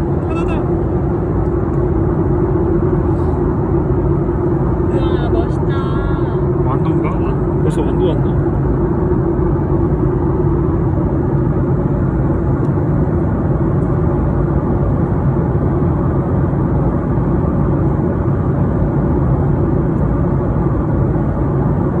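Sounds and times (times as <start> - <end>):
airliner cabin engine drone: 0.0 - 22.0.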